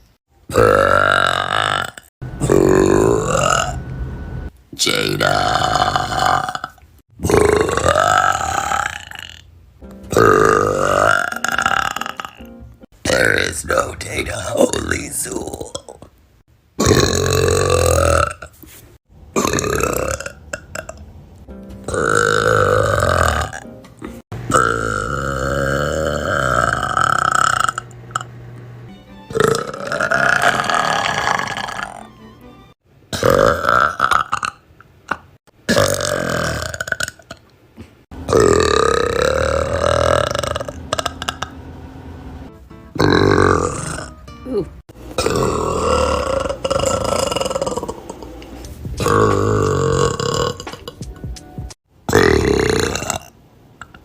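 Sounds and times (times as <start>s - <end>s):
women burping: 10.1s - 12.5s, 21.9s - 28.3s, 29.4s - 32.0s, 38.3s - 41.6s, 43.0s - 48.3s, 49.0s - 51.0s.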